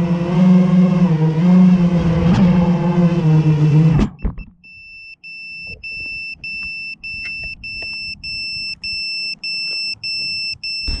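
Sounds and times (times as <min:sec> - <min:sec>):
electronic buzzer beeping: 0:04.2 - 0:11.0.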